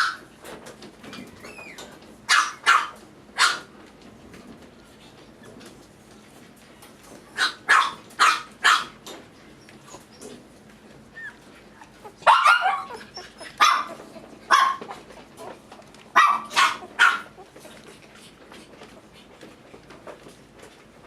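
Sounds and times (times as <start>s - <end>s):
puppy barking: 0.0s - 0.3s, 2.3s - 3.7s, 7.4s - 9.0s, 11.8s - 15.2s, 16.1s - 17.5s.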